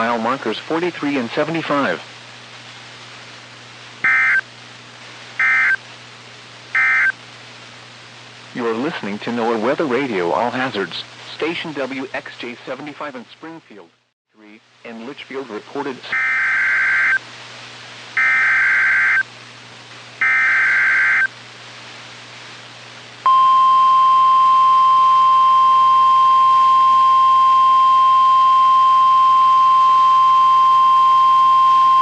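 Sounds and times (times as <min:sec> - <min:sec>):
buzzing data bursts: 0:04.0 - 0:04.4, 0:05.4 - 0:05.8, 0:06.8 - 0:07.2, 0:18.2 - 0:19.2, 0:20.2 - 0:21.3
digital header: 0:04.0 - 0:04.4, 0:05.4 - 0:05.8, 0:06.8 - 0:07.1, 0:20.2 - 0:21.3
steady warning alarm tone: 0:04.0 - 0:04.4, 0:05.4 - 0:05.8, 0:06.8 - 0:07.1, 0:16.1 - 0:17.2, 0:18.2 - 0:19.2, 0:20.2 - 0:21.3.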